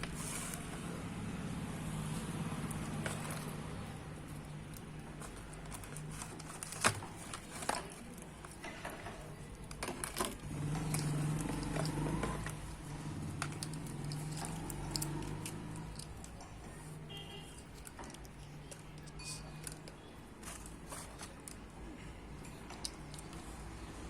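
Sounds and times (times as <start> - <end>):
packaging clicking and crinkling: 2.5 - 23.8.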